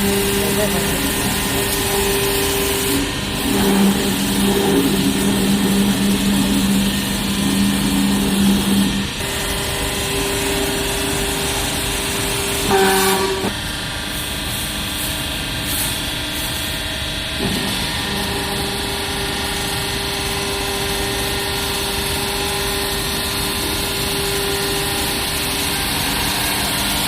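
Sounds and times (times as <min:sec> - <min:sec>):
hydraulic power unit humming: 0:00.0 - 0:27.0.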